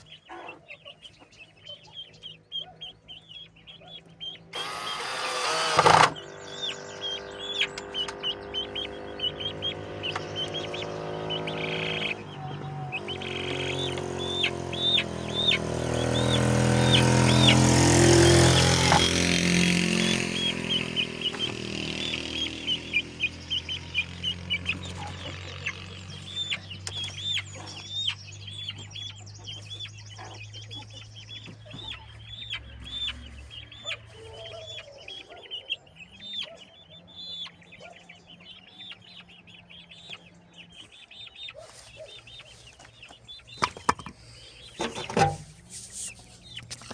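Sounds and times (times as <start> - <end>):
chickens peeping: 0.0 - 46.9
motor humming: 4.2 - 29.7.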